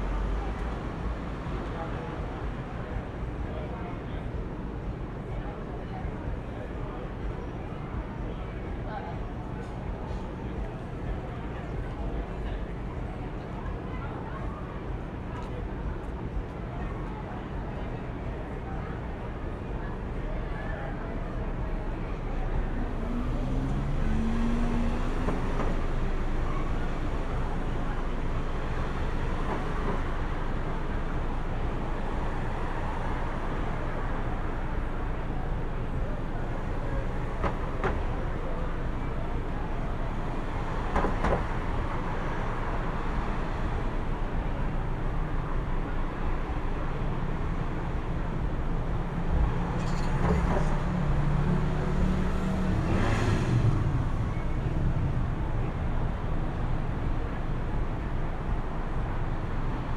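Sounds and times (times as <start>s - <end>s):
traffic rumble: 0.0s - 59.9s
engine low drone: 18.0s - 59.9s.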